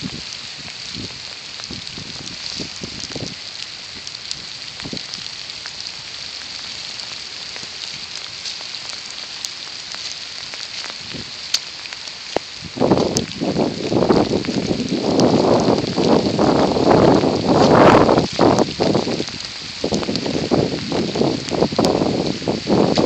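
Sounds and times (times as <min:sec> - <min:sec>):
water hissing like rain: 0:00.0 - 0:23.0.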